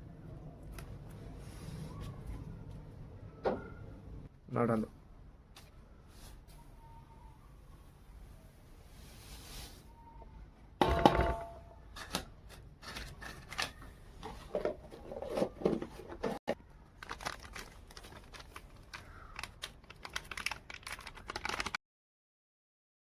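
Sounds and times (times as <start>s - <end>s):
loud knock with ring: 10.8s - 11.6s
objects clicking and crinkling: 11.9s - 21.8s.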